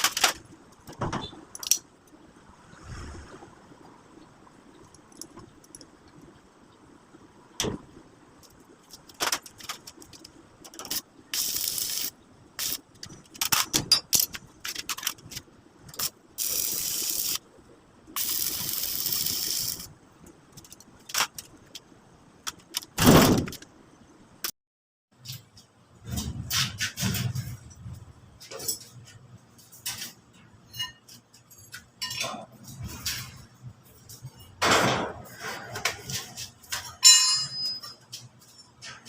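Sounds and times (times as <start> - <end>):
metal parts clanking: 8.8 - 15.4, 26.0 - 39.0
steady hissing: 9.8 - 13.3, 15.2 - 20.0.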